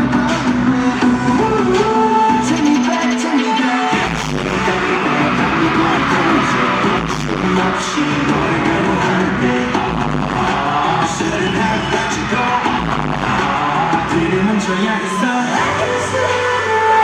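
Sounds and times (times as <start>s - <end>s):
live pop music with singing: 0.0s - 17.0s.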